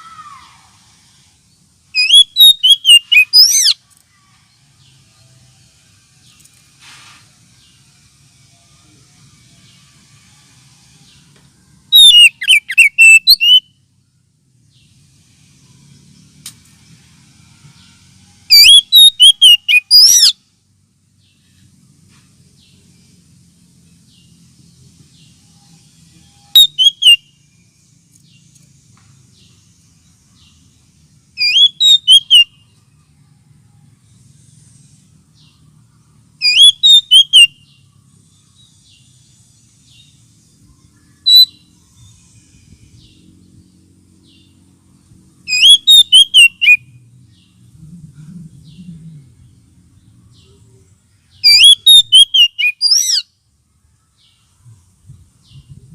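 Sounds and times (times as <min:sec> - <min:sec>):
bird song rapid whistled notes: 0:02.0 - 0:03.8, 0:11.9 - 0:13.8, 0:18.5 - 0:20.4, 0:26.3 - 0:27.5, 0:31.4 - 0:32.6, 0:36.4 - 0:37.8, 0:41.2 - 0:42.3, 0:45.5 - 0:46.9, 0:51.4 - 0:53.3
faint bird twittering: 0:02.0 - 0:03.8, 0:11.9 - 0:13.8, 0:18.5 - 0:20.4, 0:23.8 - 0:28.6, 0:31.4 - 0:32.8, 0:36.4 - 0:44.6, 0:45.5 - 0:53.3.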